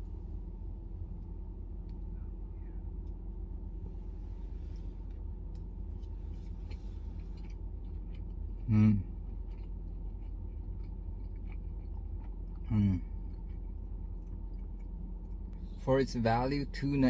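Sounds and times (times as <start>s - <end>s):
low room hum: 0.0s - 17.0s
man humming: 8.7s - 9.1s, 12.7s - 13.0s.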